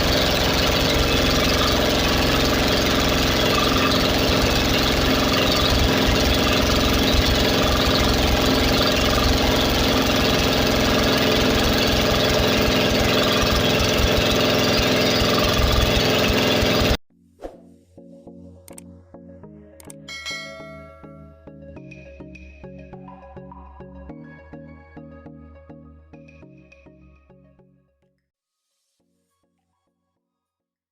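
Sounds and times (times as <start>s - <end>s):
engine running: 0.0s - 17.0s.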